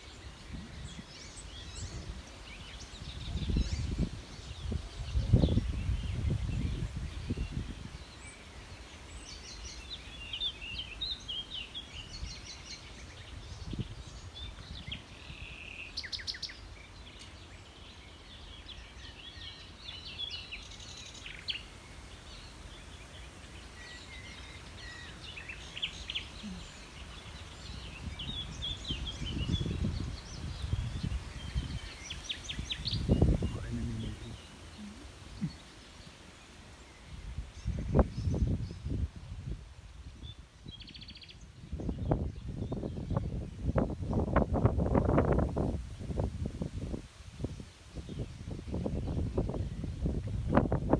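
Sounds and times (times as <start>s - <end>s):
songbirds singing and chirping: 0.0s - 50.9s.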